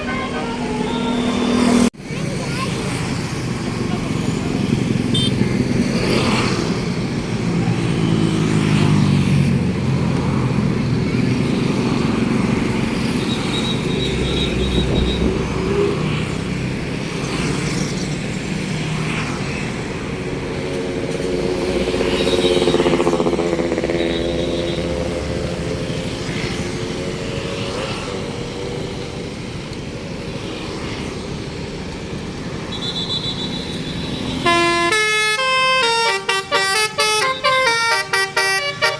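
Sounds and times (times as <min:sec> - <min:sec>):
multi-note bus horn: 0:00.0 - 0:01.9, 0:32.8 - 0:38.9
vehicle engines passing: 0:00.0 - 0:38.9.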